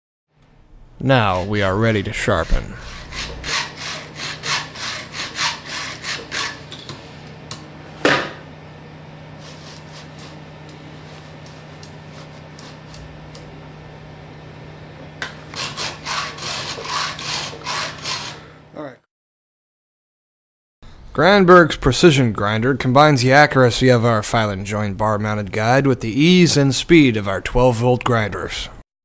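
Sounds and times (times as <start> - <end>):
file rasping on saw chain: 1.4 - 6.7, 15.5 - 18.4.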